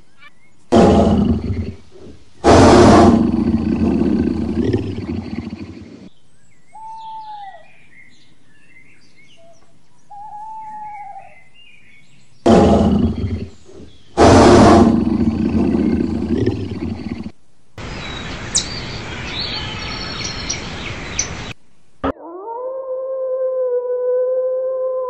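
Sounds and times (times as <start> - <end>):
birds chirping quietly: 0.0 - 22.0
big cat roaring: 0.7 - 6.0, 12.5 - 17.3
whistled bird calls: 6.4 - 11.9, 17.9 - 21.5.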